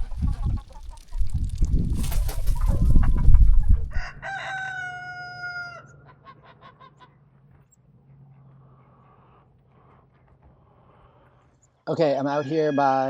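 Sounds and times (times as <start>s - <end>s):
rooster crowing: 3.9s - 6.1s, 12.0s - 13.0s.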